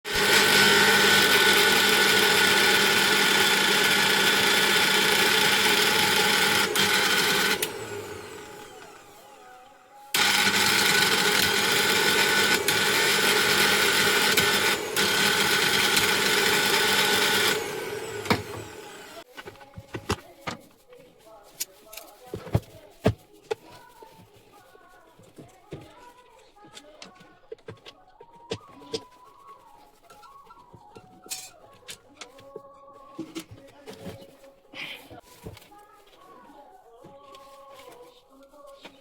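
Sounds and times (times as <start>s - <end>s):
mixer grinder motor humming: 0.1s - 19.3s.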